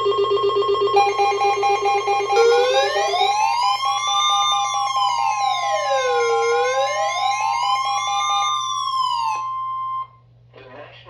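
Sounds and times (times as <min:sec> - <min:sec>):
rapidly pulsing beep: 0:00.0 - 0:10.1
steady high tone: 0:00.0 - 0:10.1
electronic siren wailing: 0:00.0 - 0:10.2.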